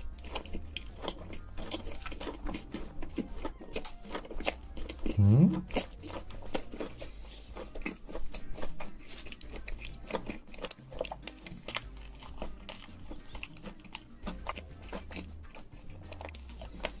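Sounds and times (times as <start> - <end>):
chewing crunchy food: 0.0 - 17.0
mouth sounds: 5.1 - 5.9.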